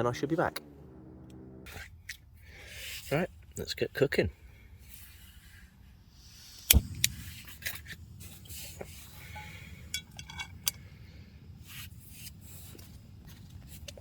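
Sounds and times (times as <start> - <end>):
cookware clicks and clatters: 9.4 - 10.8.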